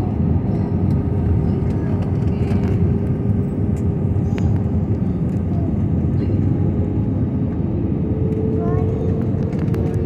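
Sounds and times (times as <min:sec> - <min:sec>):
airliner cabin engine roar: 0:00.0 - 0:10.0.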